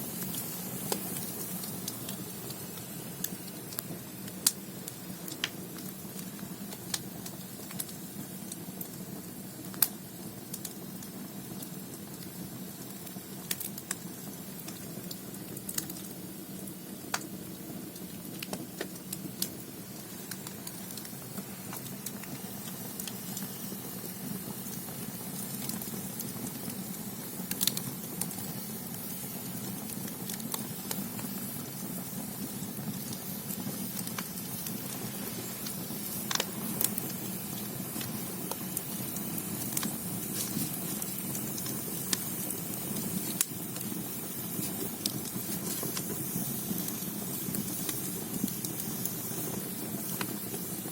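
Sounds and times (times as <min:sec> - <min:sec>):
firewood crackling and popping: 0:00.0 - 0:50.9
fire rushing: 0:26.3 - 0:50.6.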